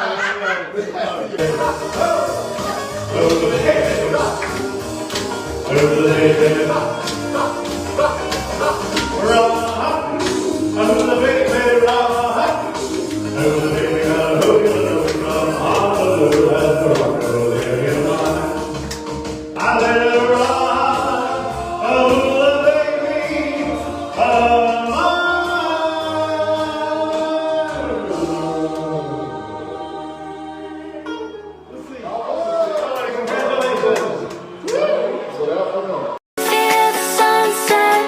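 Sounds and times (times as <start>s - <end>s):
choir-like singing: 1.3s - 19.0s, 19.6s - 31.3s
musical accompaniment: 1.4s - 32.3s, 36.4s - 38.0s.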